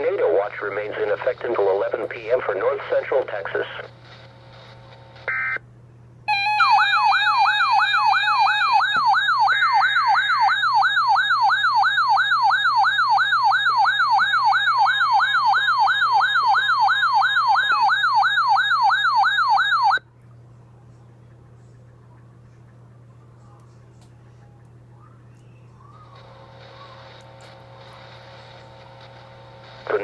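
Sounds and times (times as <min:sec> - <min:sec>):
warbling siren-like tone: 0:06.3 - 0:20.0, 0:25.8 - 0:27.8.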